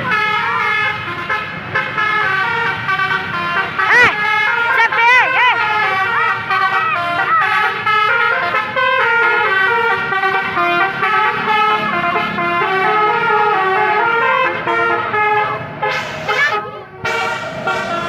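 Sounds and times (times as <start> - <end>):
multi-tone bus horn melody: 0.0 - 18.0.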